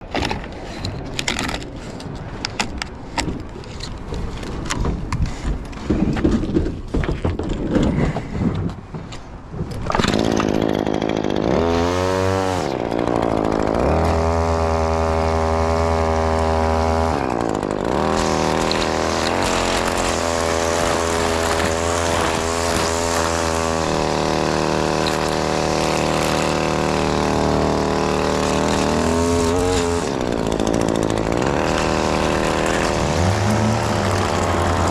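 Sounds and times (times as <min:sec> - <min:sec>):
rustling and clicking: 0:00.0 - 0:10.5
string trimmer engine revving: 0:09.9 - 0:34.9.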